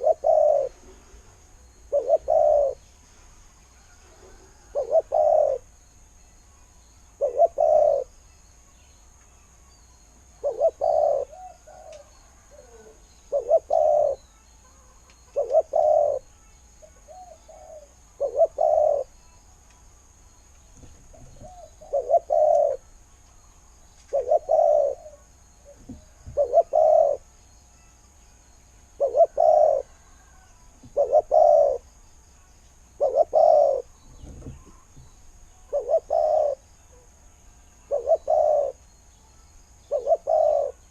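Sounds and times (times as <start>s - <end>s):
dove cooing: 0.0s - 1.1s, 1.9s - 2.8s, 4.2s - 5.7s, 7.2s - 8.1s, 10.4s - 14.2s, 15.3s - 16.3s, 16.9s - 19.1s, 21.1s - 22.8s, 24.1s - 27.2s, 29.0s - 31.8s, 33.0s - 34.9s, 35.7s - 37.0s, 37.9s - 38.8s, 39.8s - 40.9s.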